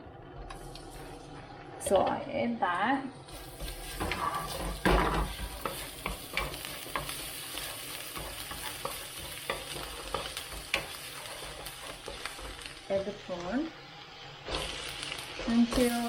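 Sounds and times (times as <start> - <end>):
spice paste sizzling in oil: 3.2 - 16.0
utensil scraping pan: 3.3 - 12.7
utensil knocking pan: 3.6 - 12.7.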